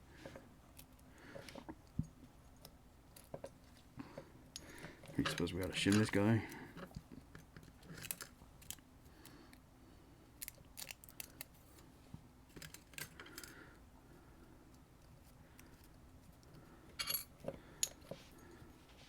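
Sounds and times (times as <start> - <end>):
small metal parts clicking and scraping: 4.5 - 8.8, 10.4 - 11.8, 12.5 - 13.6, 15.6 - 18.2.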